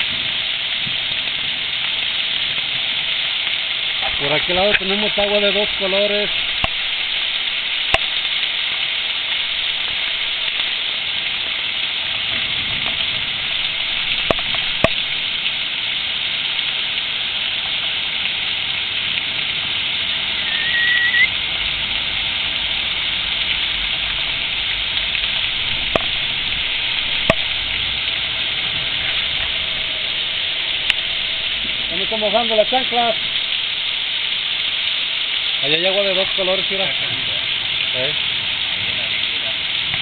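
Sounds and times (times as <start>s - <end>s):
heavy rain: 0.0s - 40.0s
raindrops tapping: 0.0s - 40.0s
rising chirp: 20.4s - 21.3s.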